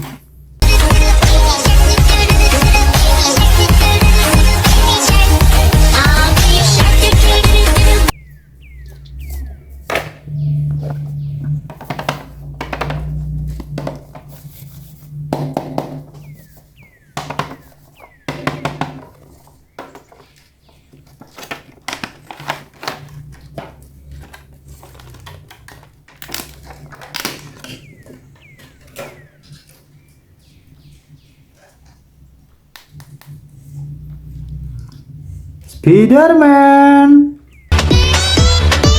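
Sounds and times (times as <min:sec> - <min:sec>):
packaging rustling: 0:15.9 - 0:31.3
plastic toy parts clicking: 0:20.2 - 0:29.2.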